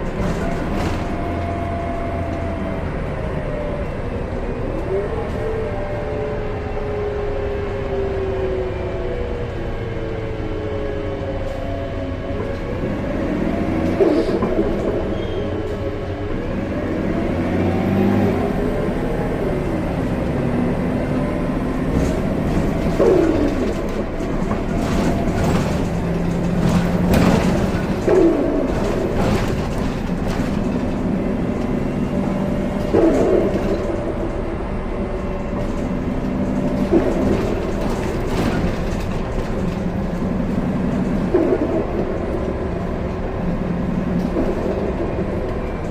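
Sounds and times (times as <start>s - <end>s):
bus engine drone: 0.0s - 45.9s
rattles and clicks: 21.2s - 45.9s.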